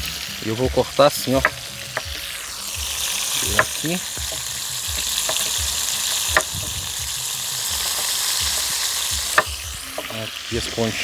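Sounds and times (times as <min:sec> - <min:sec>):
oil sizzling in frying pan: 0:00.0 - 0:11.0
knife clicks on cutting board: 0:03.5 - 0:06.9.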